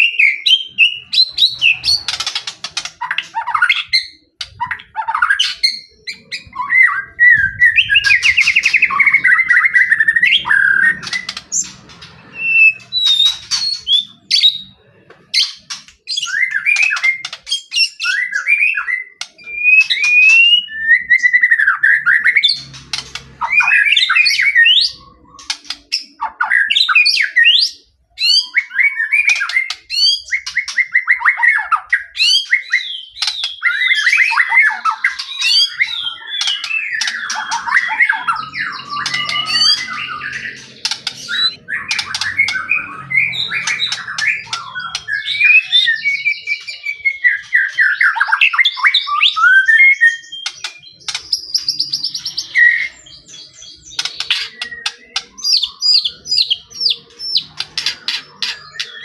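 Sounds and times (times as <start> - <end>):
songbird singing varied song: 3.0 - 59.0.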